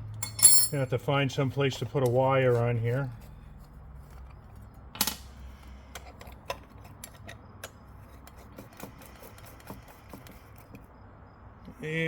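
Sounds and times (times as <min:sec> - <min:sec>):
metal tools clicking and clinking: 0:00.2 - 0:00.9.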